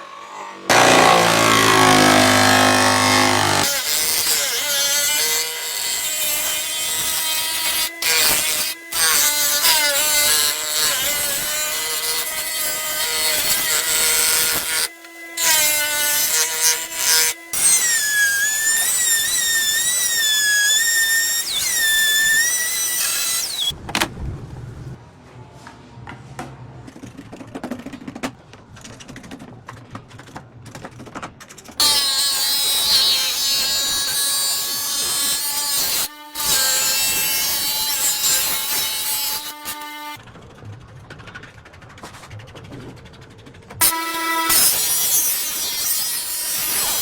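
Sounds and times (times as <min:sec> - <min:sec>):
power tool whining under load: 0:00.0 - 0:23.8.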